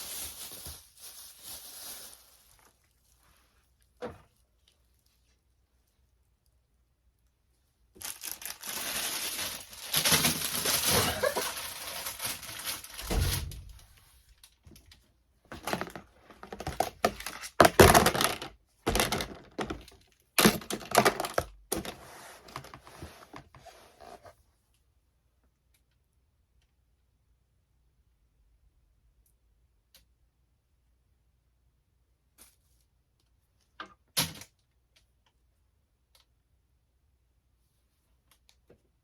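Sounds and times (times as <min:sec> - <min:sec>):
rustling and crinkling of toys: 0:00.0 - 0:06.4, 0:07.2 - 0:24.6
toys clattering into boxes: 0:15.6 - 0:22.0.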